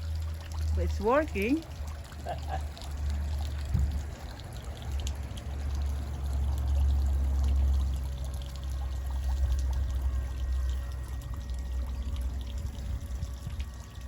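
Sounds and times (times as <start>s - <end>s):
wind rumbling on microphone: 3.5s - 5.2s, 11.9s - 14.0s.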